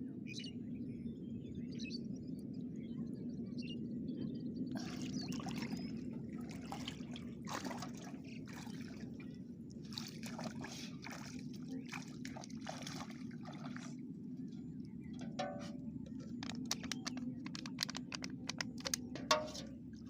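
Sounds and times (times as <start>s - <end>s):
water trickling and splashing: 4.7s - 20.0s
steady low rumble: 13.3s - 20.0s.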